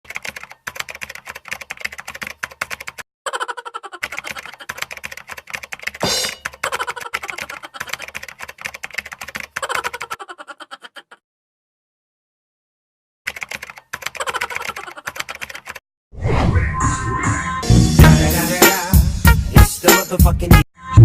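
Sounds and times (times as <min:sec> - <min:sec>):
rapid irregular clicking: 0:00.1 - 0:03.0, 0:04.0 - 0:10.1.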